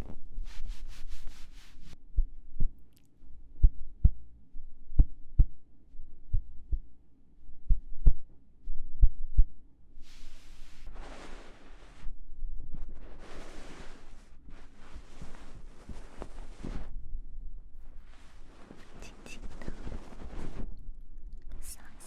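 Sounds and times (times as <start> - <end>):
heartbeat thumps: 3.6 - 4.2, 4.9 - 6.9, 7.6 - 9.6.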